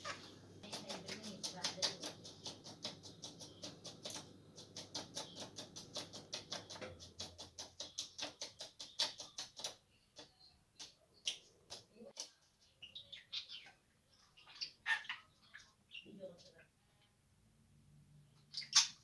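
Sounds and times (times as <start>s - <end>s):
budgerigar clicking: 0.0s - 12.4s
budgerigar chirps: 18.5s - 19.0s.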